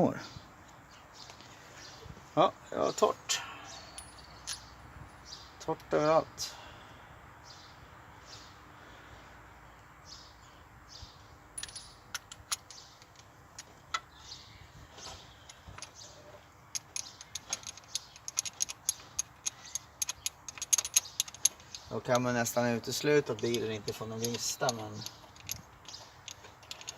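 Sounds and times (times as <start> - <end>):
metallic clicks of tools and parts: 3.9 - 4.7, 11.6 - 14.1, 15.5 - 16.0, 16.7 - 22.6, 23.2 - 26.9.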